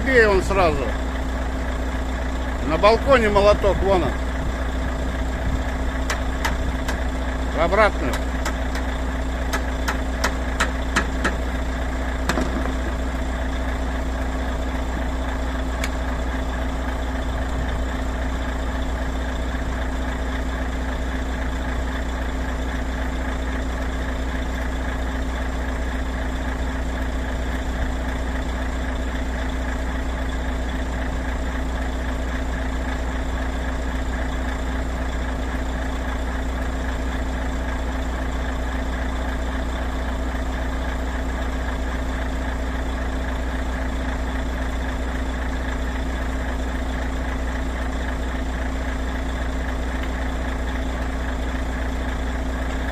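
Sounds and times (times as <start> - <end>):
diesel truck engine idling: 0.0 - 52.9
sharp hammer taps: 6.1 - 7.0, 9.5 - 11.4.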